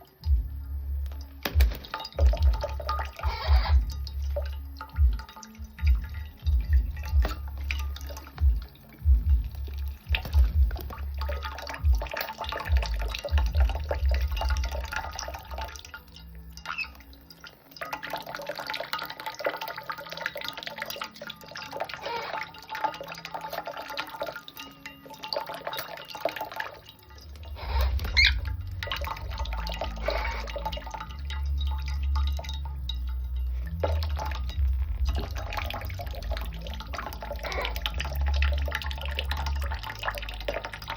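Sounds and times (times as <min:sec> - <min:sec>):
water splashing and dripping: 0:00.0 - 0:40.9
low thumps: 0:05.0 - 0:12.1, 0:27.3 - 0:39.8.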